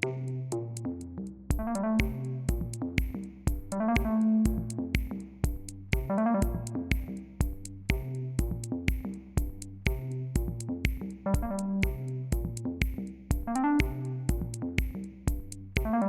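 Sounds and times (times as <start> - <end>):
synthesizer chords: 1.5 - 5.2, 5.8 - 7.3, 11.3 - 12.6, 13.4 - 14.6, 15.8 - 16.0
drum machine beat: 1.5 - 16.0.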